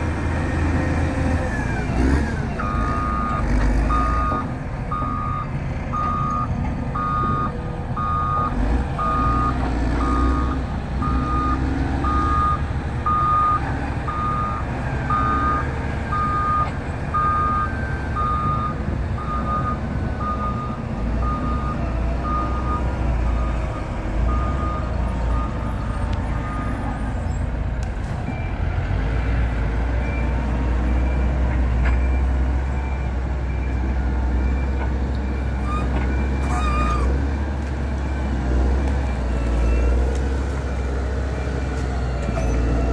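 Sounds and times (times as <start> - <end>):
diesel engine rumble: 0.0 - 42.9
reversing alarm beeping: 2.6 - 27.0.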